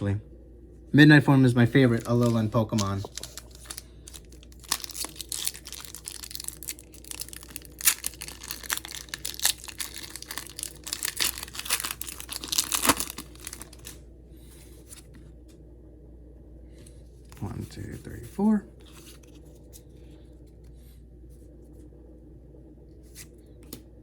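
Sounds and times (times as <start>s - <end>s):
foil wrapper tearing and crinkling: 1.8s - 14.0s.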